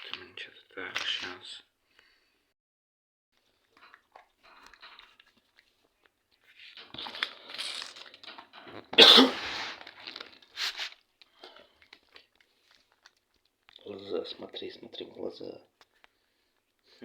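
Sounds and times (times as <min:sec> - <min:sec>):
foil pouch crinkling and tearing: 0:06.6 - 0:08.4, 0:09.4 - 0:11.2.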